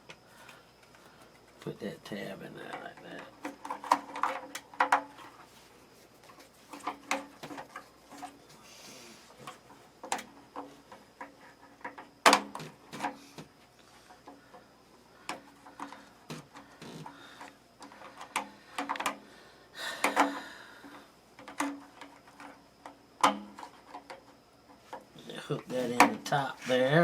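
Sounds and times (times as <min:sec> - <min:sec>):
plastic parts clicking and knocking: 0:02.6 - 0:05.4, 0:06.7 - 0:08.4, 0:09.4 - 0:13.2, 0:14.1 - 0:19.2, 0:20.0 - 0:25.1.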